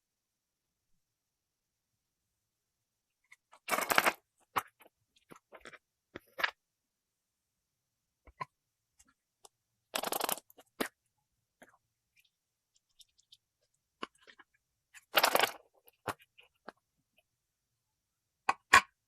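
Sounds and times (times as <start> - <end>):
toys clicking and knocking: 9.4 - 10.9.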